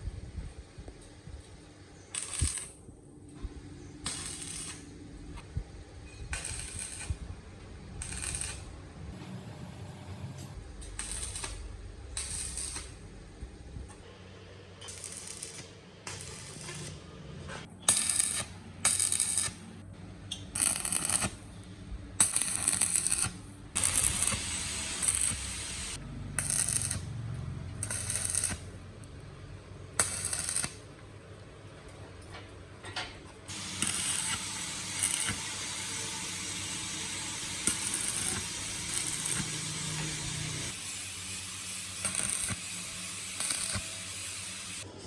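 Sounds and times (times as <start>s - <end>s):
metalworking tool bursts and hiss: 2.2s - 2.8s, 4.0s - 4.9s, 6.4s - 7.2s, 8.0s - 11.6s, 14.8s - 17.0s, 22.2s - 27.1s, 27.8s - 28.7s, 30.0s - 30.8s, 33.5s - 44.9s.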